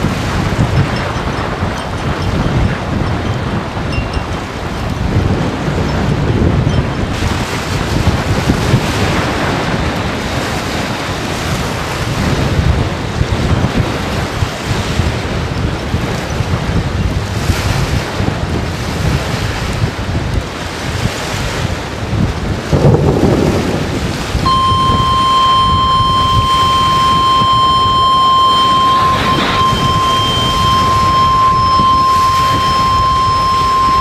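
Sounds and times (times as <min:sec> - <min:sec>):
storm wind buffeting microphone: 0:00.0 - 0:34.0
steady electronic tone: 0:24.5 - 0:34.0.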